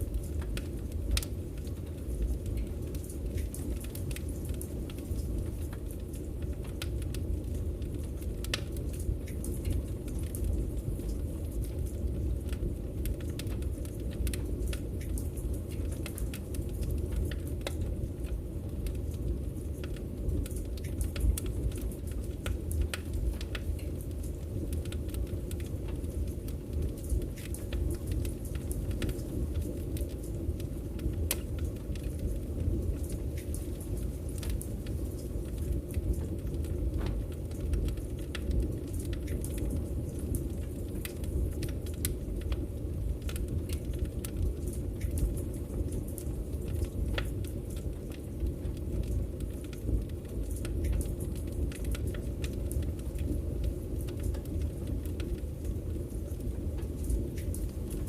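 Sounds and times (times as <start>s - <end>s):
low rumble of flames: 0.0s - 58.0s
wood fire crackling: 0.0s - 58.0s.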